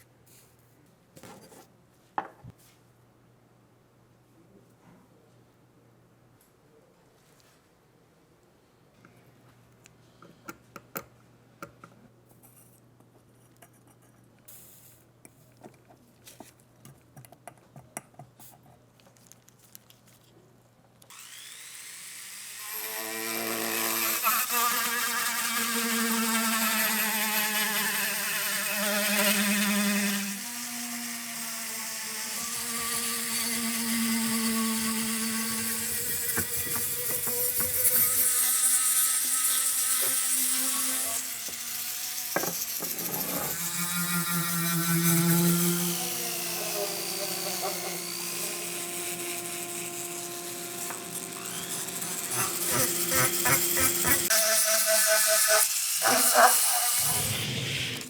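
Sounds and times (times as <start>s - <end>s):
electric power tool whine: 21.1s - 58.0s.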